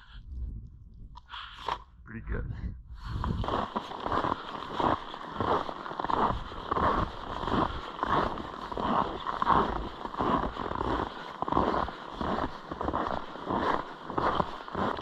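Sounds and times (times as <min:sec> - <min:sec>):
footsteps crunching in snow: 0:03.0 - 0:15.0.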